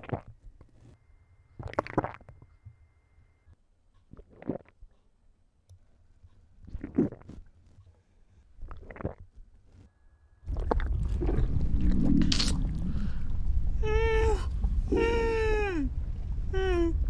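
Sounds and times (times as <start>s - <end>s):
stomach gurgling: 0.0s - 1.0s, 1.6s - 2.4s, 4.1s - 4.8s, 6.6s - 7.8s, 8.6s - 9.4s, 10.5s - 15.2s.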